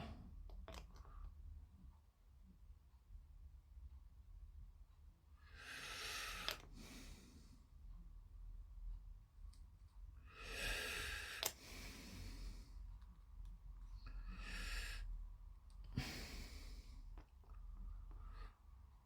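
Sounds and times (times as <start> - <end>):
faint breathing: 5.4 - 7.8, 10.2 - 13.0, 13.8 - 15.3, 15.9 - 18.8.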